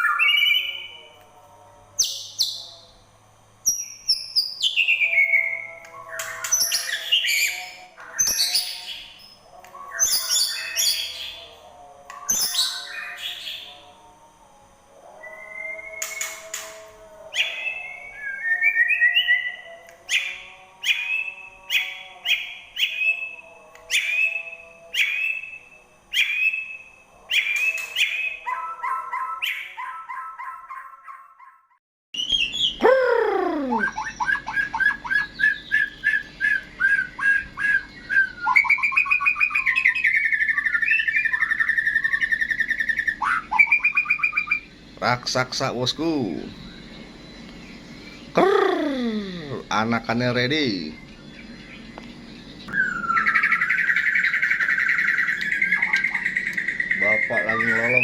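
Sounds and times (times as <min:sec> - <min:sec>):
bird singing: 0:00.0 - 0:01.1, 0:02.0 - 0:03.0, 0:03.6 - 0:14.0, 0:15.0 - 0:31.6, 0:32.2 - 0:58.0.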